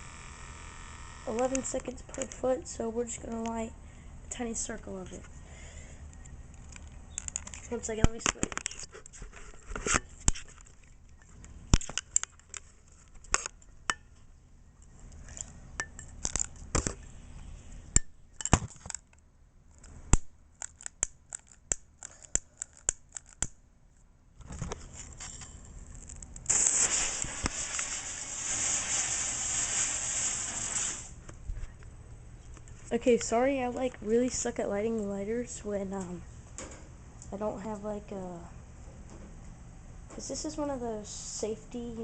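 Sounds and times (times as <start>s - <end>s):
fuse burning with steady hiss: 0.0s - 2.3s, 26.1s - 32.7s.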